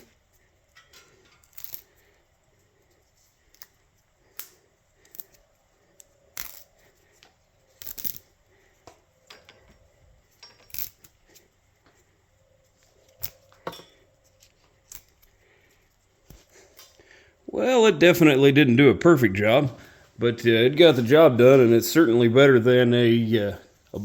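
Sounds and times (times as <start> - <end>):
copper wire clicking and tearing: 1.2 - 2.1, 3.5 - 5.4, 6.0 - 6.9, 7.8 - 8.4, 10.6 - 11.4, 13.1 - 13.7, 14.6 - 15.4.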